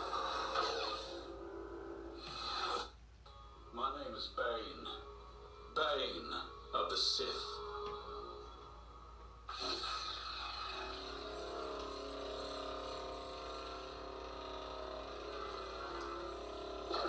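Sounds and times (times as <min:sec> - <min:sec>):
lightsaber electric hum: 0:09.4 - 0:17.0.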